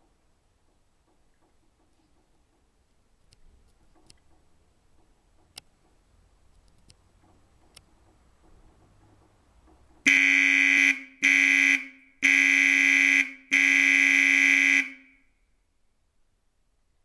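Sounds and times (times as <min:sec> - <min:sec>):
dual-tone horn blasts: 0:10.1 - 0:15.3.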